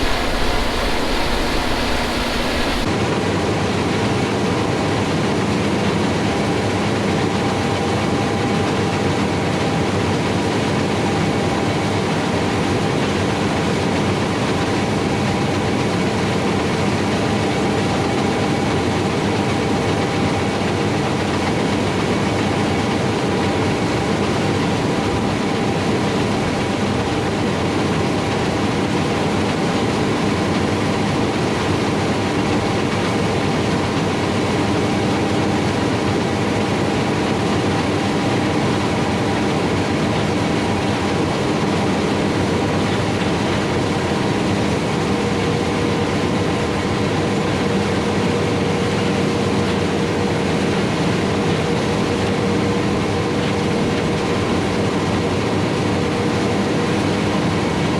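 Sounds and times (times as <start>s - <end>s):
harvest machinery drone: 0.0s - 2.9s
machinery whining tones: 0.0s - 2.9s.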